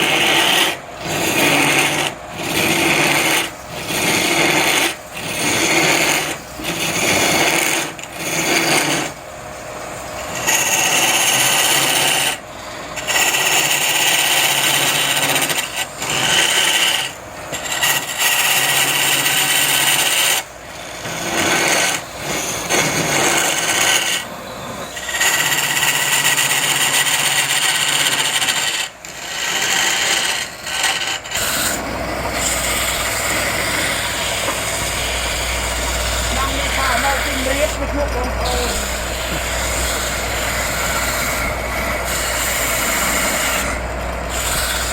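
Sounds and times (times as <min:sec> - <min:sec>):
lathe tool cutting wood: 0:00.0 - 0:44.9
steady low hum: 0:30.6 - 0:44.9.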